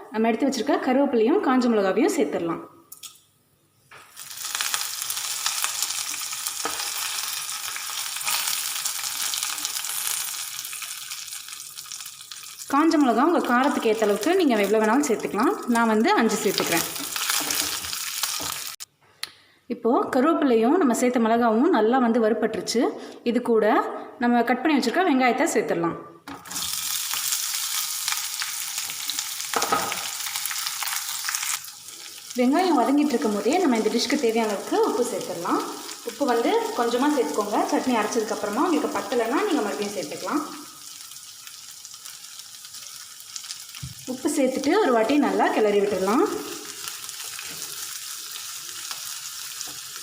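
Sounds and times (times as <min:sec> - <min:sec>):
spices sizzling in hot oil: 0:04.0 - 0:18.9, 0:26.3 - 0:50.0
oil crackling: 0:04.1 - 0:18.8, 0:26.4 - 0:44.1.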